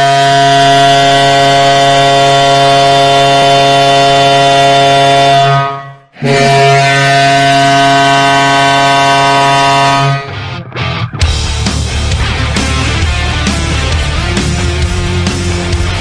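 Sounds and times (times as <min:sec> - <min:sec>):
arena goal horn blasts: 0:00.0 - 0:10.4.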